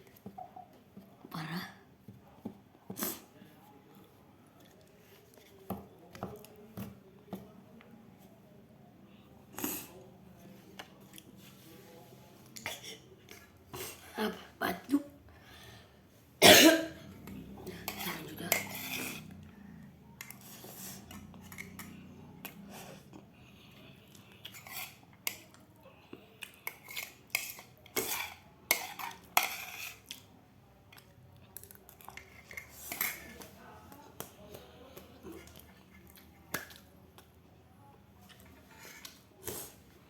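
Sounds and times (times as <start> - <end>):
cutlery clinking on a plate: 17.9 - 19.2.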